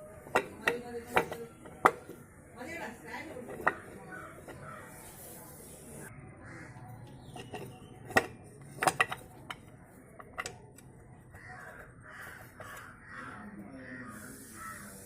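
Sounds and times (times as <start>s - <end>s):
bird harsh calls: 11.4s - 15.0s.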